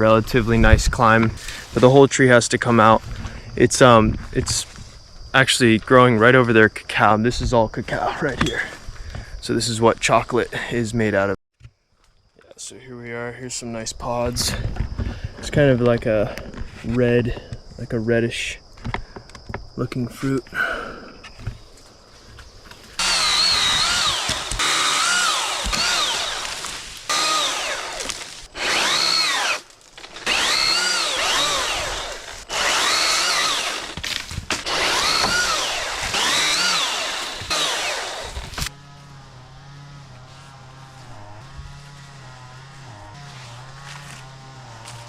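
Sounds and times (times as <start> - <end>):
cordless power tool whine: 22.8 - 45.0.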